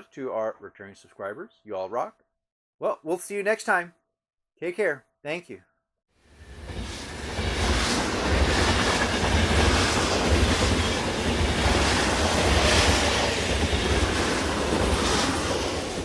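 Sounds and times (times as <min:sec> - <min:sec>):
train wheels clattering on rails: 0:06.6 - 0:16.0.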